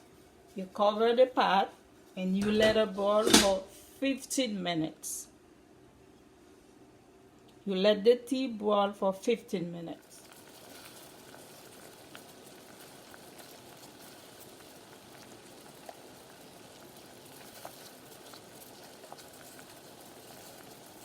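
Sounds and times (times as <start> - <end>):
pot boiling with bubbling hiss: 8.8 - 21.0.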